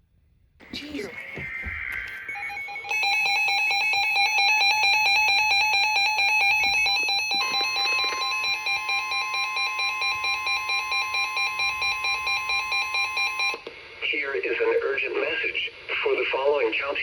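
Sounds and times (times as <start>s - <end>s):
electronic alarm tone: 1.4s - 13.6s.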